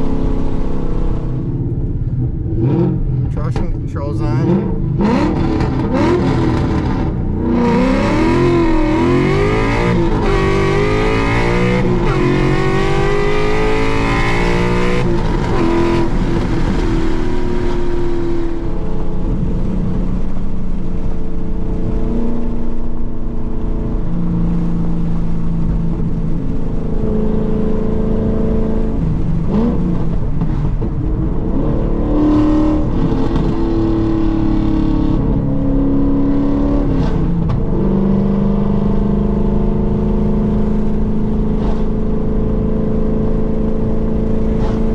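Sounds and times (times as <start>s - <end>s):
car engine revving: 0.0s - 44.9s.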